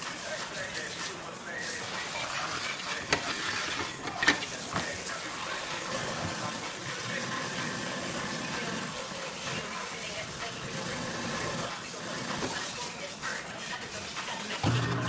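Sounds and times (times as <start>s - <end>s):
water running from a tap: 0.0s - 15.0s.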